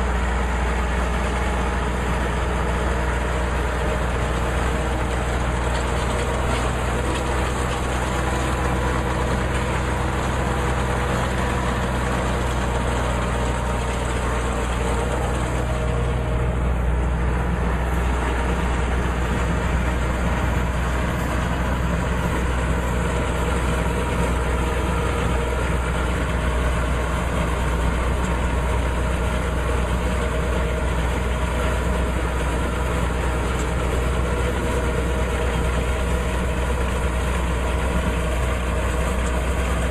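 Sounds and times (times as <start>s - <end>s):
baler machinery turning: 0.0s - 39.9s
tractor engine running: 0.0s - 39.9s.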